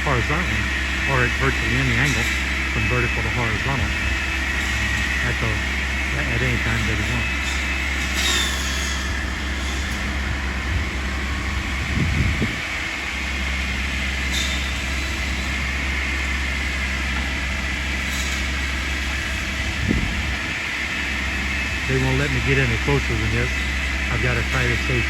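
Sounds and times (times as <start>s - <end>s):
engine drone: 0.0s - 25.0s
high whine: 0.0s - 25.0s
low rumble: 9.1s - 12.9s.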